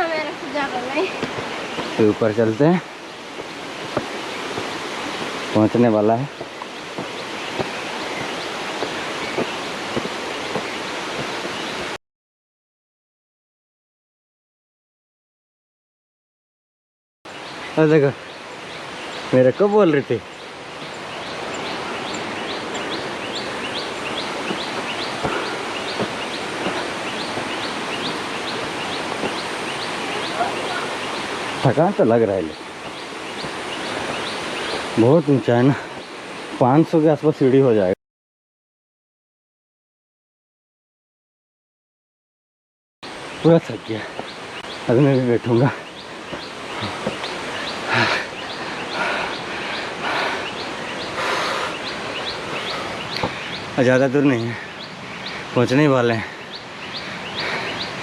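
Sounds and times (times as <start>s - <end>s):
rushing hiss of background noise: 0.0s - 12.0s, 17.3s - 37.9s, 43.1s - 58.0s
heavy breathing: 25.1s - 27.2s, 46.7s - 53.6s, 56.2s - 57.9s.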